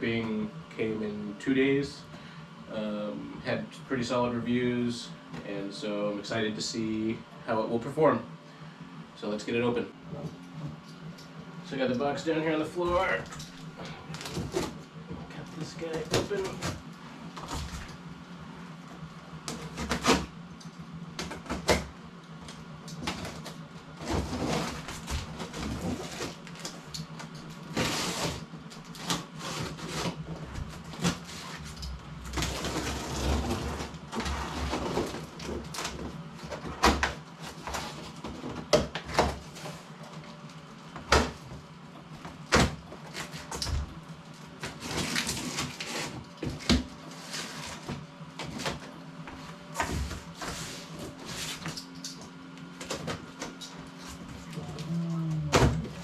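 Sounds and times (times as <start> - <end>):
steady low hum: 0.0 - 56.0
cardboard rustling and scraping: 11.8 - 18.0, 23.0 - 26.9, 27.6 - 51.9.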